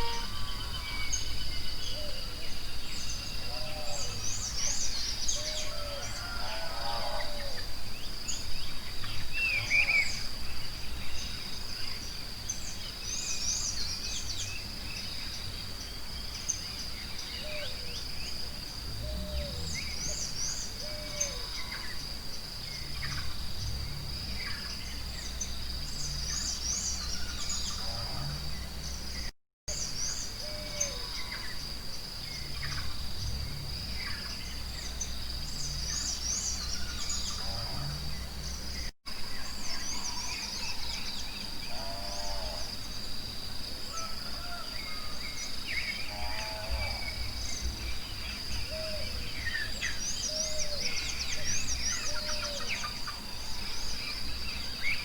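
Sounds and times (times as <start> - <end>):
high-pitched insect drone: 0.0 - 1.3
low rumble: 23.0 - 26.4, 32.6 - 36.1
birds chirping and calling: 46.2 - 55.0.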